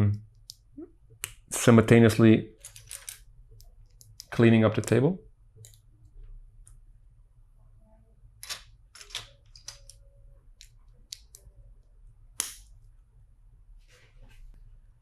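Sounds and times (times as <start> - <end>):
plastic bricks clicking: 8.4 - 10.0.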